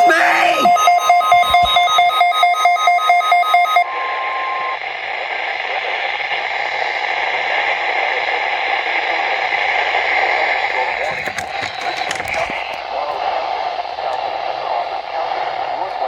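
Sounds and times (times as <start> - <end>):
rapid electronic alert beeping: 0.0 - 4.6.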